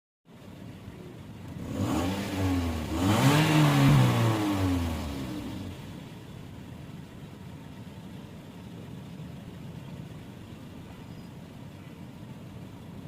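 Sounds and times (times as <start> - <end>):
misfiring car engine revving: 1.4 - 6.8.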